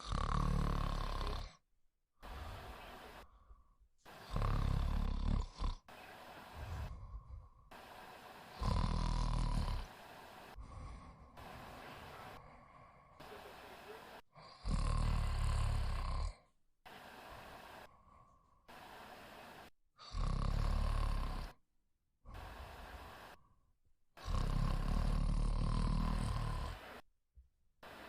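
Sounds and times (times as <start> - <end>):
woman snoring loudly: 0.0 - 1.6, 4.1 - 5.9, 7.8 - 12.4, 14.4 - 16.4, 20.0 - 21.6, 24.2 - 27.0.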